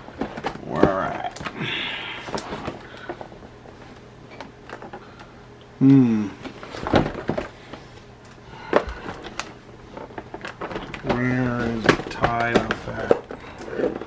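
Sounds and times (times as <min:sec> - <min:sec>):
short falling vocal sound: 0:05.8 - 0:06.4.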